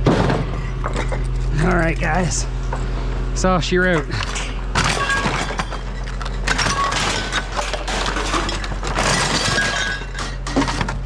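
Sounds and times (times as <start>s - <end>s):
steady low hum: 0.0s - 11.0s
hard objects clattering: 4.2s - 11.0s.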